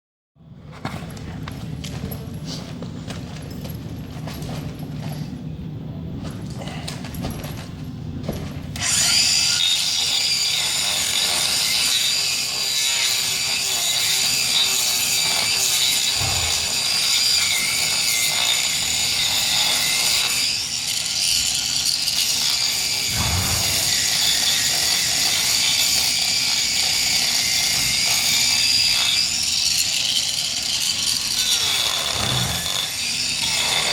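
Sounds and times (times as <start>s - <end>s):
power grinder grinding hoof: 8.8s - 33.9s.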